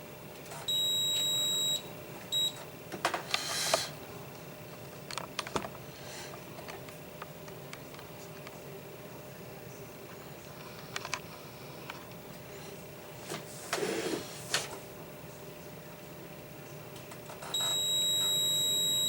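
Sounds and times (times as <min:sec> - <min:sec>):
multimeter continuity beeps: 0:00.7 - 0:02.6, 0:17.5 - 0:19.0.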